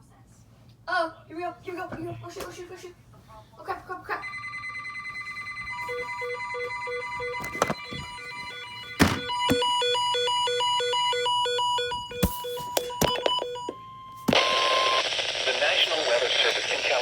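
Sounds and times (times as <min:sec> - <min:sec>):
steady high alarm tones: 0:04.1 - 0:15.5
two-pitch alarm beeps: 0:04.2 - 0:15.0.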